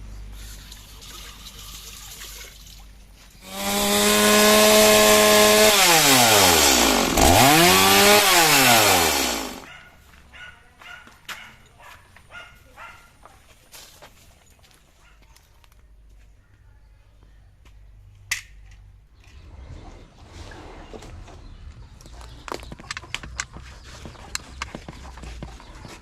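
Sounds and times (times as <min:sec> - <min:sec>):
chainsaw engine revving: 0:03.4 - 0:09.7.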